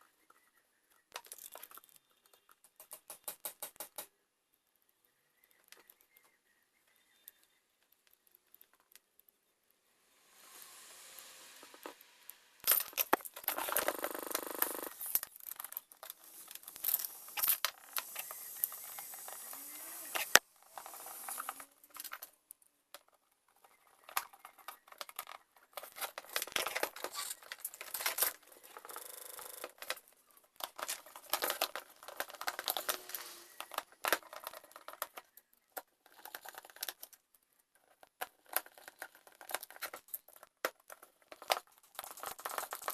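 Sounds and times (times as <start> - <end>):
rustling of plastic parts: 0.3 - 3.5, 10.8 - 42.9
clicks and knocks of handling: 1.0 - 4.1, 21.9 - 42.9.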